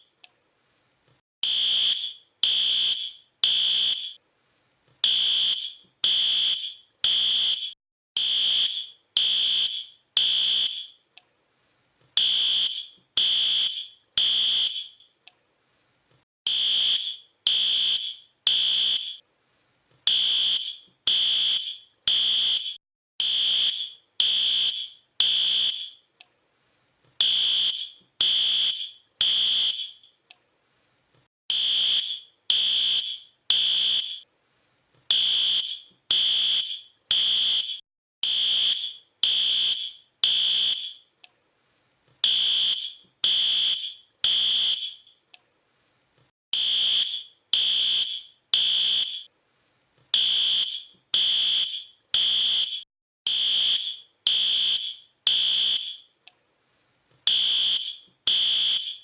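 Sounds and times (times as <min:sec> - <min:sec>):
fire alarm beeping: 0:01.4 - 0:04.2, 0:05.0 - 0:11.0, 0:12.2 - 0:15.0, 0:16.5 - 0:19.2, 0:20.1 - 0:26.0, 0:27.2 - 0:30.1, 0:31.5 - 0:34.2, 0:35.1 - 0:41.0, 0:42.2 - 0:45.1, 0:46.6 - 0:49.3, 0:50.2 - 0:56.1, 0:57.3 - 0:59.0.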